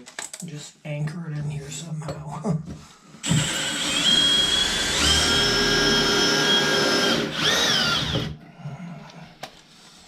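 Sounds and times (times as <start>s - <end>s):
power drill whining: 3.2s - 8.4s.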